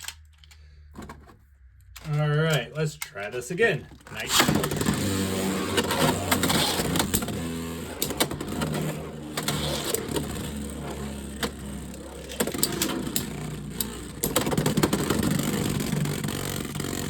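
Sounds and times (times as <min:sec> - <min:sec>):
spinning tops whirring: 0:04.1 - 0:17.0.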